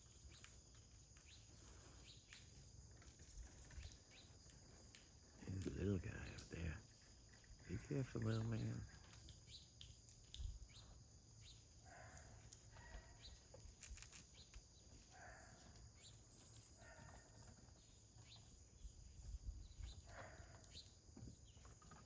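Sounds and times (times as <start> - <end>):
insects trilling: 0.0 - 22.0.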